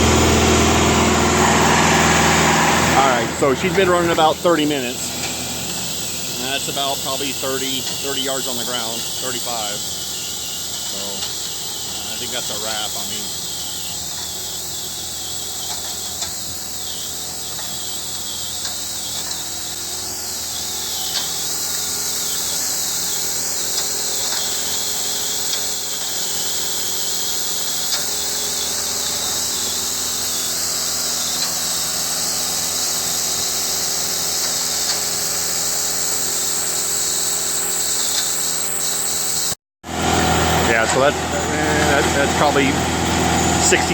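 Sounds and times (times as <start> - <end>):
strong high hiss: 0.0 - 30.4
concrete pump engine hum: 0.0 - 43.9.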